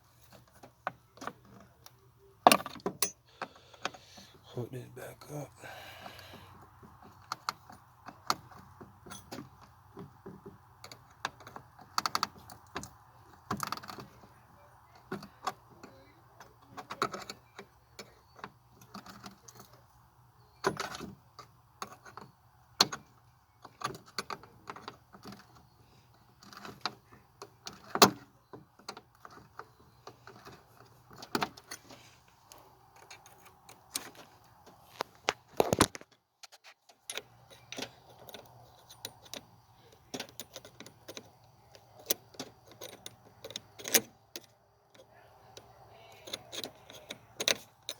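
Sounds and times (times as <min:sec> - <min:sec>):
hand tools clicking and rattling: 0:30.1 - 0:47.9.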